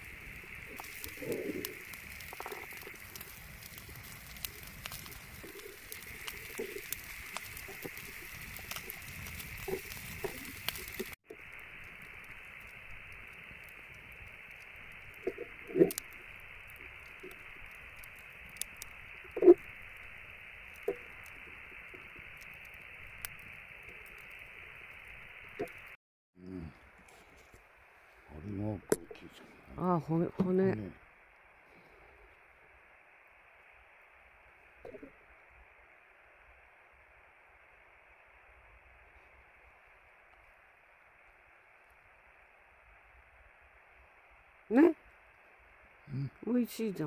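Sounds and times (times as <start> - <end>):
wood fire crackling: 0.0 - 47.0
sharp pops: 28.8 - 29.4.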